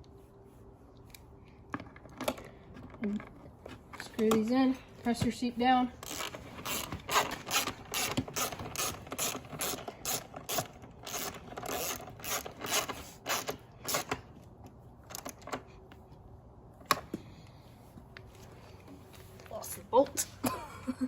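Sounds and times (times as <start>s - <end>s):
socket ratchet clicking: 6.0s - 14.2s.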